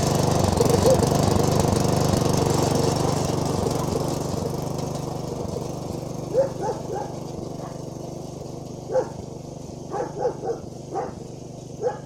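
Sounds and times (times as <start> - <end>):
lawn mower engine running: 0.0 - 12.0.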